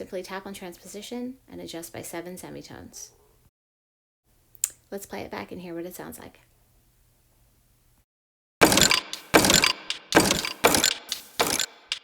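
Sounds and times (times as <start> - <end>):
looped beat of kitchen sounds: 8.6 - 12.0.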